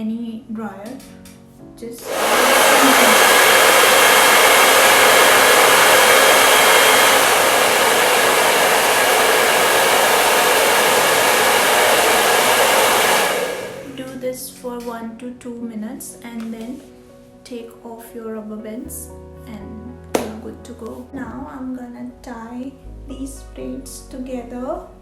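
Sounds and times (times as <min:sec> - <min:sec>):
hair dryer blowing: 0:02.0 - 0:14.2.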